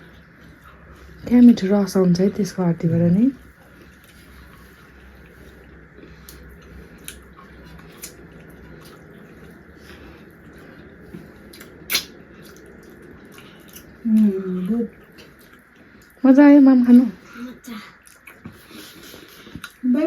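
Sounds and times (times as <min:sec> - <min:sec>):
mouth clicks and lip smacks eating: 0:03.7 - 0:09.6, 0:11.4 - 0:14.0, 0:14.9 - 0:16.2, 0:18.0 - 0:19.8.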